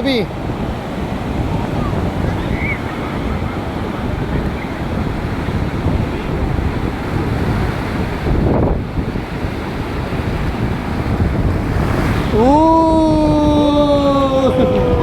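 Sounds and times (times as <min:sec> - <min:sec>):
waves washing on beach: 0:00.0 - 0:15.0
wind buffeting microphone: 0:00.0 - 0:15.0
person calling out: 0:12.3 - 0:15.0.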